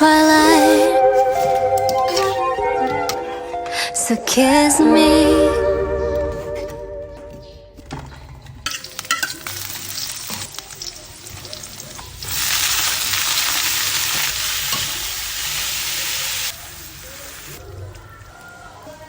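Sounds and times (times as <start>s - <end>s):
food sizzling in hot oil: 8.7s - 17.6s.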